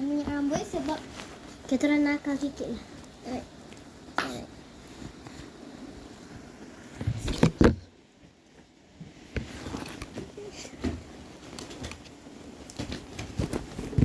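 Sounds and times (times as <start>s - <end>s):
knocks and thumps: 7.0s - 7.9s.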